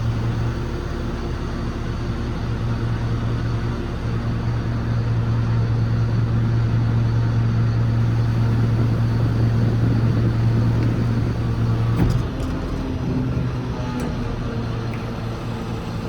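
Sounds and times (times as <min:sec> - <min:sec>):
diesel truck engine running: 0:00.0 - 0:16.0
click: 0:14.9 - 0:15.1.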